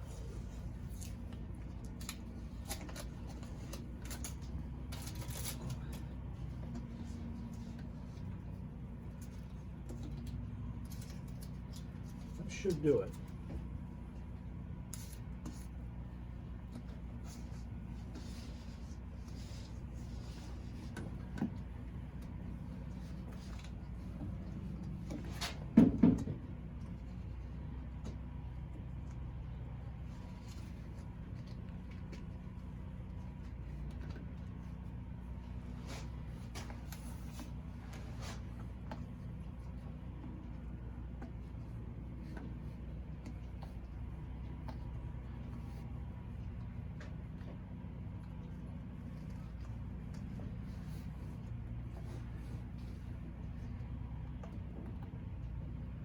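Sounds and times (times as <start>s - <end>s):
steady low hum: 0.0s - 56.0s.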